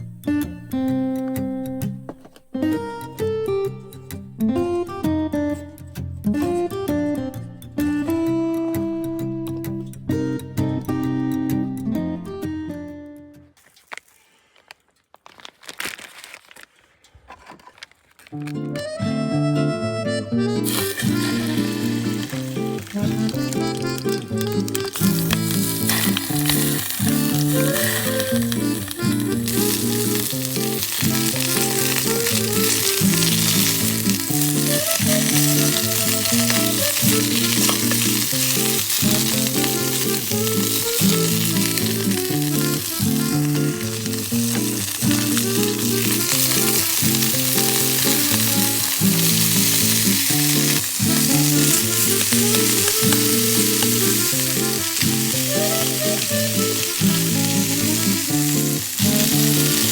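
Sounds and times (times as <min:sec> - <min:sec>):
background music: 0:00.0 - 0:13.6, 0:18.4 - 0:59.9
meat sizzling: 0:20.6 - 0:59.9.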